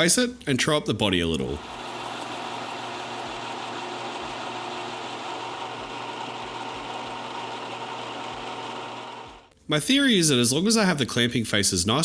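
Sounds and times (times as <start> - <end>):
metal lathe motor hum: 1.6 - 9.5.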